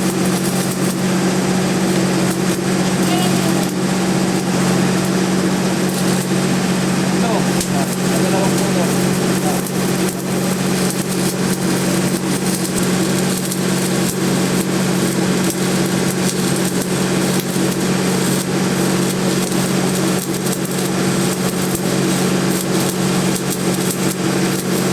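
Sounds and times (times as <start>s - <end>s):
dense crackle: 0.0s - 24.9s
small engine running: 0.0s - 24.9s.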